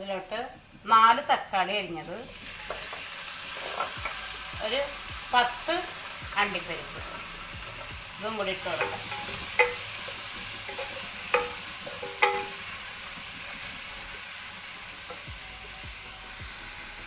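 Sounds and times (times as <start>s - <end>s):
food sizzling in hot oil: 0.0s - 17.0s
spoon clinking against pan: 8.7s - 12.7s.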